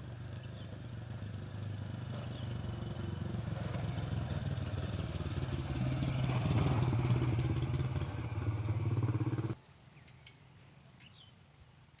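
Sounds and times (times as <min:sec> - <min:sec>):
motorcycle engine running: 0:00.0 - 0:09.6.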